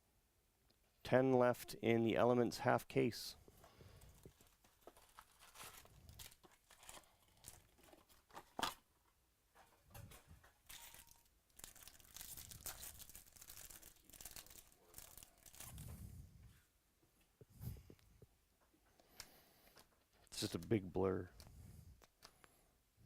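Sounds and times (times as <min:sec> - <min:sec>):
foil wrappers tearing and crinkling: 0:04.3 - 0:08.7, 0:10.6 - 0:15.8.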